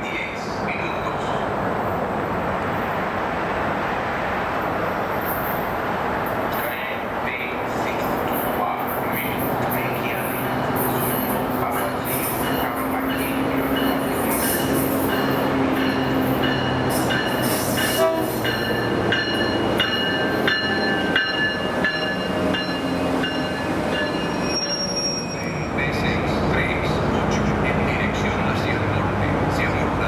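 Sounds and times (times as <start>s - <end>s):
train rumbling on tracks: 0.0s - 30.0s
wheels squealing: 8.3s - 21.0s, 21.6s - 25.8s.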